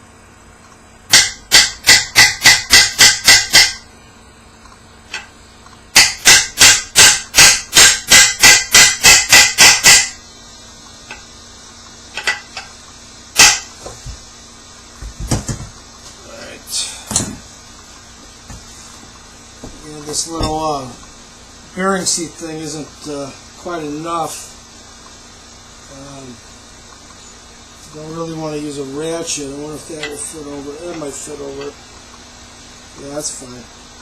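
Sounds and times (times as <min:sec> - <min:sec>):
hammer striking metal: 0:01.1 - 0:03.8, 0:05.9 - 0:10.2, 0:12.2 - 0:12.7, 0:13.4 - 0:13.7.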